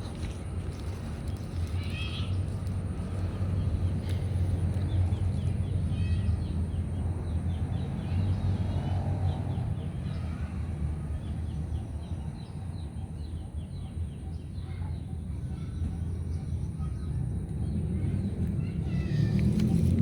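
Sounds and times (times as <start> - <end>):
low outdoor rumble: 0.0 - 20.0.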